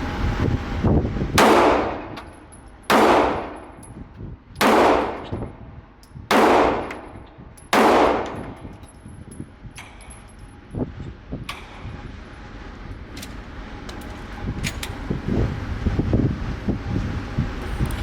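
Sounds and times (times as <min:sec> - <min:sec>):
pistol shots echoing: 0:01.4 - 0:02.2, 0:02.9 - 0:03.7, 0:04.6 - 0:05.4, 0:06.3 - 0:08.6.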